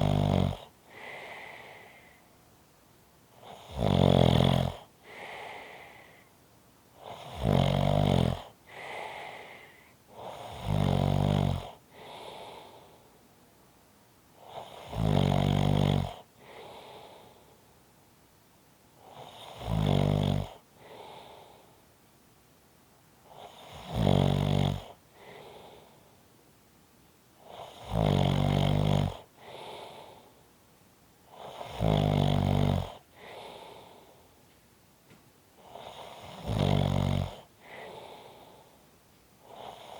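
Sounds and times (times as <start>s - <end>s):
loud rattling snores: 0.0s - 1.5s, 3.4s - 5.8s, 7.0s - 12.6s, 14.4s - 17.2s, 19.0s - 21.4s, 23.3s - 25.8s, 27.4s - 30.1s, 31.3s - 33.8s, 35.6s - 38.4s, 39.4s - 39.9s
soft breath: 0.7s - 2.4s, 4.8s - 7.2s, 8.5s - 10.5s, 11.8s - 13.4s, 16.2s - 17.8s, 20.6s - 21.9s, 24.9s - 26.3s, 29.2s - 30.6s, 33.0s - 36.4s, 37.3s - 39.9s.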